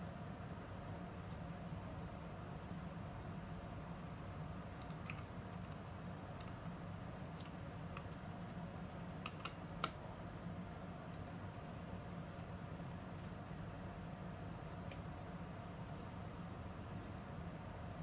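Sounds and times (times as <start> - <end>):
steady low hum: 0.0 - 18.0
small clicks and taps of handling: 7.3 - 8.3, 9.2 - 10.0.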